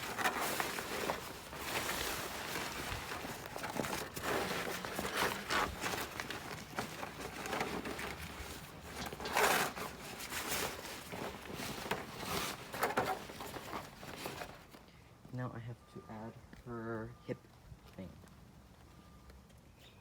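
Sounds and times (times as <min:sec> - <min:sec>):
fabric and plastic rustling: 0:00.0 - 0:14.9.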